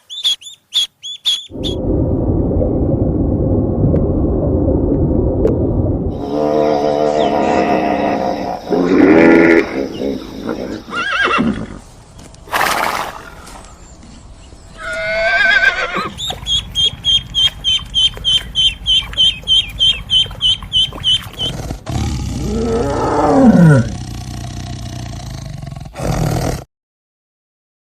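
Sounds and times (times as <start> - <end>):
high chirps: 0.0 - 1.8, 16.0 - 21.6
long deep falling call: 1.5 - 11.5.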